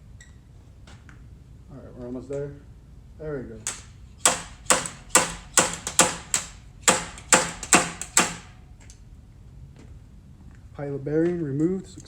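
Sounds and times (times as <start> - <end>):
sharp metal-on-metal taps: 3.7 - 8.6.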